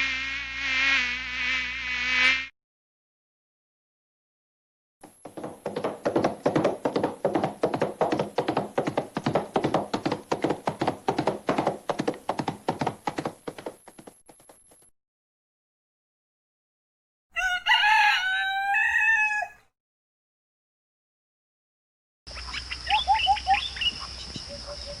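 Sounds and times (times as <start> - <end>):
rapid dull taps: 5.0 - 14.8.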